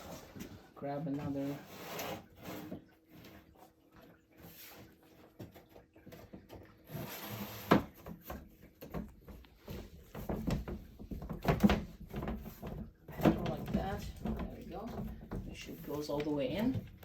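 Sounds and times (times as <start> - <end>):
wood scraping: 0.0 - 3.3
wood knocking on wood: 8.1 - 17.0.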